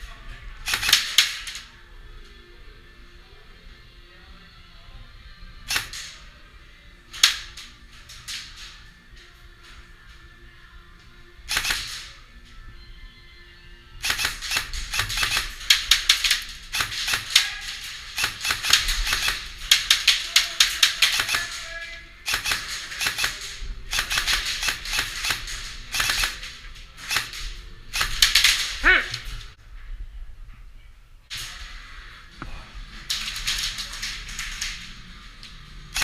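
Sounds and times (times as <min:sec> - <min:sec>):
airsoft guns firing: 0:00.7 - 0:01.6, 0:05.7 - 0:06.1, 0:11.5 - 0:12.2, 0:14.0 - 0:29.3.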